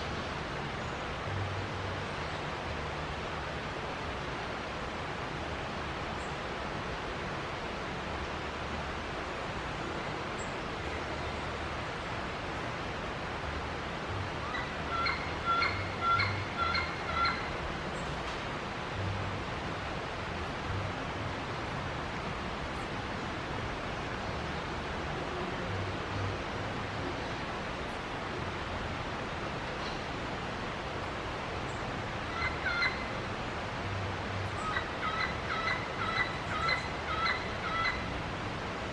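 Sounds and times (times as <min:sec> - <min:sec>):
steady background hiss: 0:00.0 - 0:38.9
steady rushing background noise: 0:00.0 - 0:38.9
bird calling: 0:14.4 - 0:17.6, 0:31.7 - 0:33.2, 0:34.5 - 0:38.1
parrots calling: 0:14.5 - 0:17.5.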